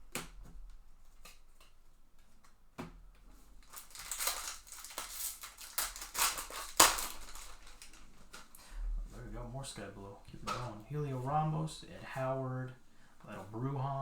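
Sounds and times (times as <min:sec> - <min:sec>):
foil wrapper crinkling: 0:03.6 - 0:08.8.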